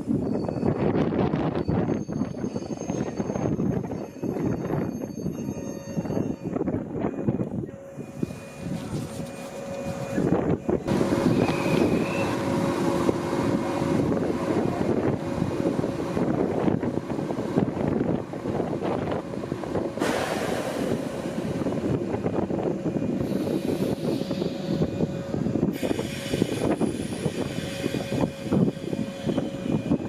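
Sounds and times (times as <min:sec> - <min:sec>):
train squeal: 0:00.0 - 0:13.2, 0:20.0 - 0:30.0
electric train rumbling: 0:00.0 - 0:30.0
wind buffeting microphone: 0:00.0 - 0:30.0.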